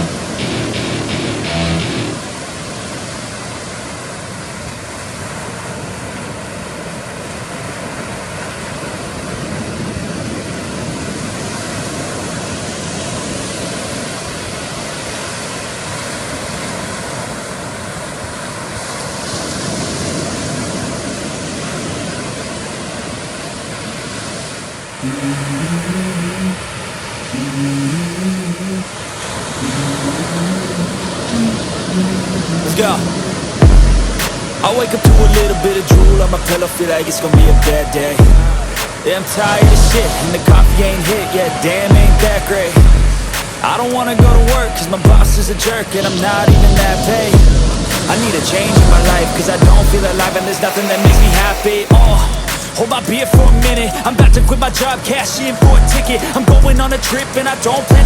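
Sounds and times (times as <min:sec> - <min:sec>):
ocean surf breaking on beach: 0:00.0 - 0:58.0
melodic music track: 0:33.6 - 0:58.0.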